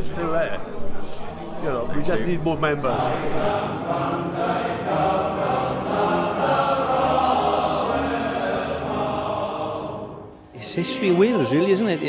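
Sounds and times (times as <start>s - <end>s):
male choir singing in harmony: 2.8s - 12.0s.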